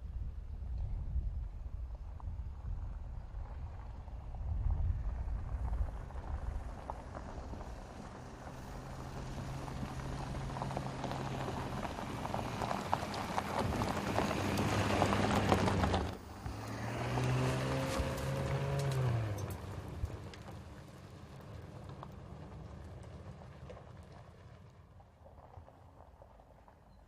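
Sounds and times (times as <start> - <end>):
gravel crackling under wheels: 0.0 - 27.0
car engine: 5.2 - 26.7
tyre noise: 8.3 - 20.7.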